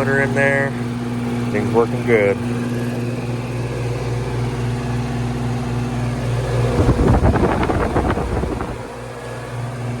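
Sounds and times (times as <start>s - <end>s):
air conditioner electrical hum: 0.0s - 10.0s
wind buffeting microphone: 6.4s - 9.0s.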